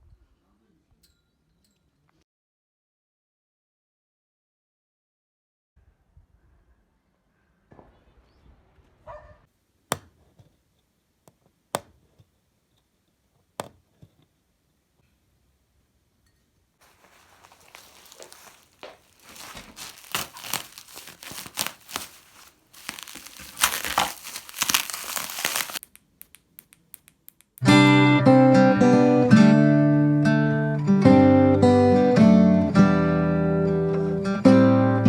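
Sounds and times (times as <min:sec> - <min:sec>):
packaging crinkling: 0:16.8 - 0:27.3.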